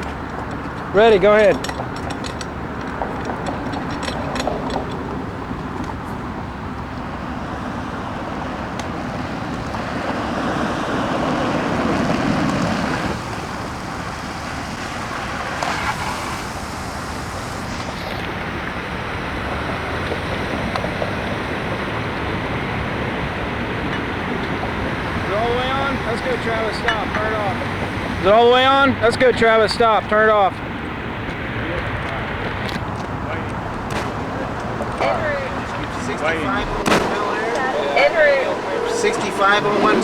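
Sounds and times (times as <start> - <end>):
water rushing through hose: 8.9 - 30.5.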